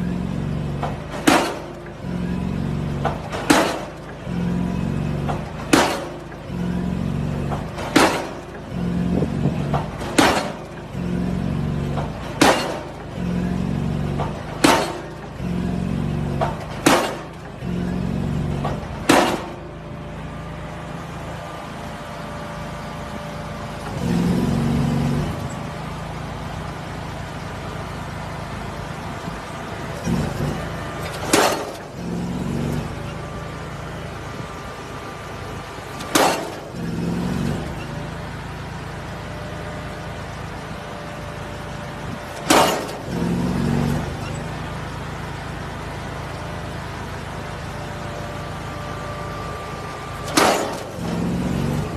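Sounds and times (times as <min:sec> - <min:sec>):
rig engine running: 0:00.0 - 0:51.9
pile hammer banging: 0:00.8 - 0:02.0, 0:03.0 - 0:04.5, 0:05.2 - 0:11.1, 0:11.9 - 0:13.3, 0:14.0 - 0:15.6, 0:16.2 - 0:19.7, 0:30.0 - 0:32.8, 0:36.0 - 0:37.4, 0:42.3 - 0:43.9, 0:50.2 - 0:51.9.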